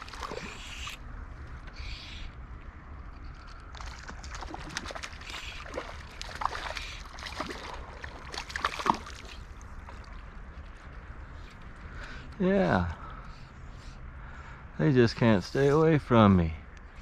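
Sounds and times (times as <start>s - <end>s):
fish splashing at water surface: 0.0s - 1.0s, 3.4s - 10.2s
low rumble of water and wind: 0.0s - 17.0s.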